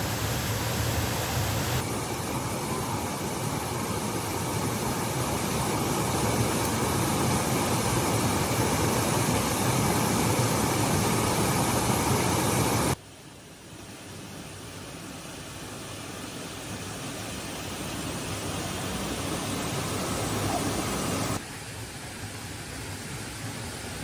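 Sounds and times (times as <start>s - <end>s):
heavy rain hissing: 0.0s - 24.0s.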